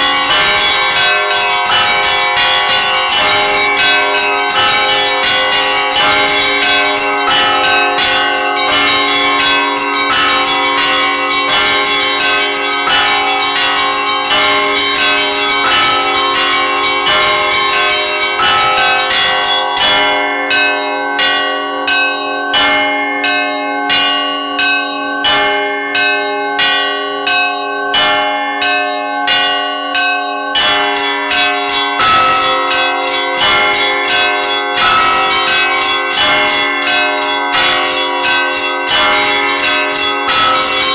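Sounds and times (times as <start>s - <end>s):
rapid strokes on tuned bells: 0.0s - 20.2s, 30.6s - 40.9s
lingering low bell tones: 0.0s - 40.9s.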